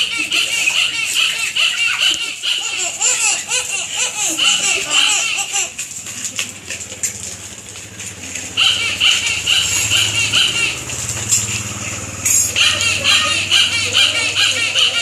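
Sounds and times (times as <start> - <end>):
high-pitched laughter: 0.0 - 5.9, 12.6 - 15.0.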